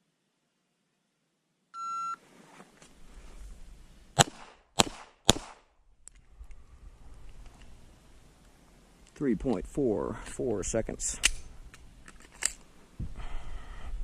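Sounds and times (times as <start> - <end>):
shot timer beep: 1.8 - 2.2
pistol shots: 4.2 - 5.7.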